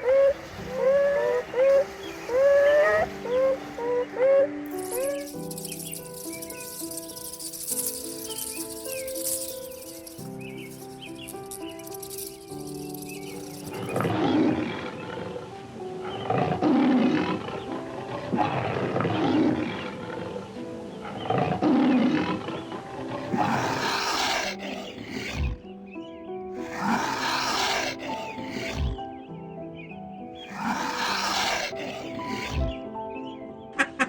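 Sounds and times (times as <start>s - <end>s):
background music: 0.0s - 34.0s
large animal rough calls: 4.7s - 25.7s, 26.6s - 29.0s, 30.4s - 32.8s.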